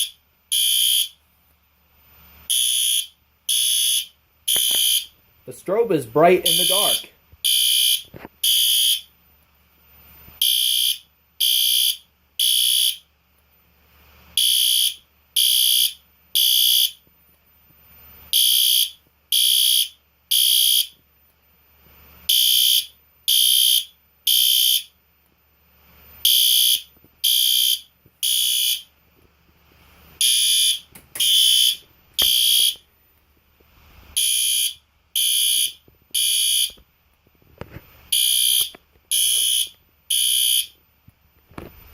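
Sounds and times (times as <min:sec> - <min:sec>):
high-pitched alarm horn blasts: 0:02.5 - 0:05.1, 0:05.7 - 0:09.0, 0:30.2 - 0:32.8, 0:34.2 - 0:36.8, 0:38.1 - 0:40.8.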